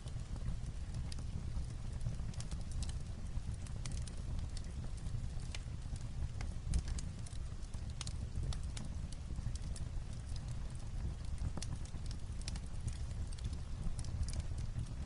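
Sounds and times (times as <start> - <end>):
light rain on a roof: 0.0 - 15.0
wood fire crackling: 0.0 - 15.0.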